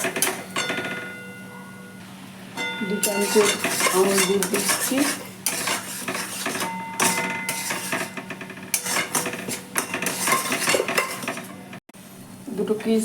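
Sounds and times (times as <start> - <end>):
metal spoon scraping a pan: 0.0 - 1.1, 2.8 - 11.8.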